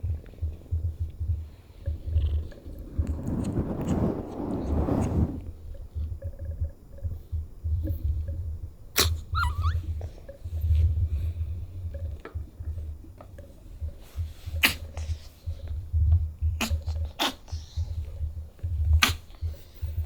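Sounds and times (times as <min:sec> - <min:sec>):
low pulsing rumble: 0:00.0 - 0:06.6
kitten sneezing: 0:09.0 - 0:09.8, 0:14.6 - 0:14.9, 0:16.6 - 0:17.7, 0:19.0 - 0:19.3
short wavering squeak: 0:09.4 - 0:09.8.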